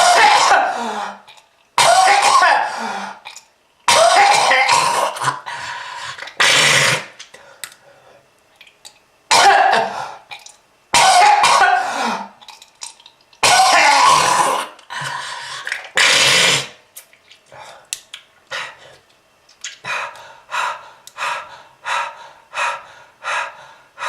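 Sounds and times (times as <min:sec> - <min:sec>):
person coughing harshly: 0:00.0 - 0:00.9, 0:01.8 - 0:02.9, 0:03.9 - 0:05.5, 0:09.3 - 0:10.1, 0:11.0 - 0:12.4, 0:13.4 - 0:14.8.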